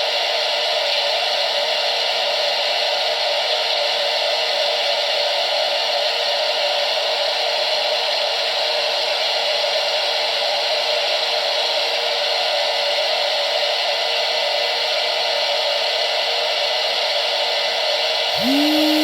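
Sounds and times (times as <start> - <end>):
popcorn maker fan whirring: 0.0 - 19.0.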